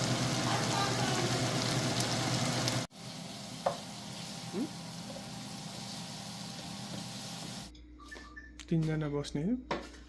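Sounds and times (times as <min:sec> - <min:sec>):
food sizzling in hot oil: 0:00.0 - 0:07.7.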